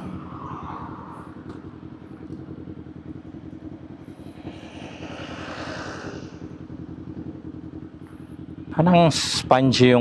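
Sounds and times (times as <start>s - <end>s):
broad rushing noise: 0.0s - 8.0s
motorcycle engine at low revs: 0.0s - 10.0s.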